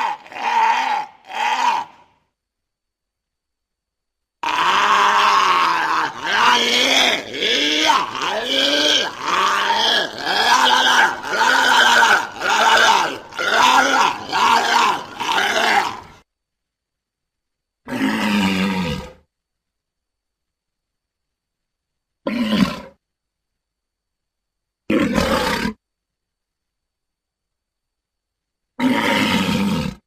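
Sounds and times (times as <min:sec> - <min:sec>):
walrus throaty calls: 0:00.0 - 0:02.2, 0:04.4 - 0:16.2.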